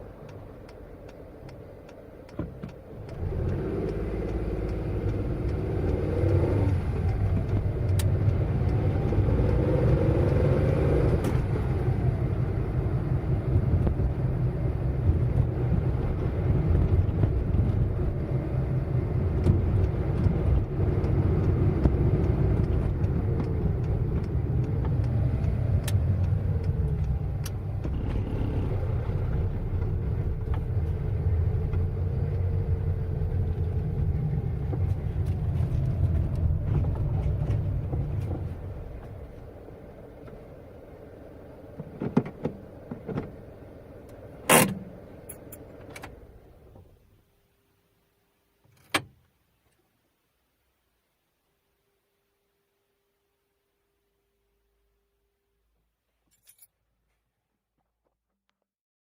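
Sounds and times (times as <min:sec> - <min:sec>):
car engine revving: 0:03.0 - 0:45.7.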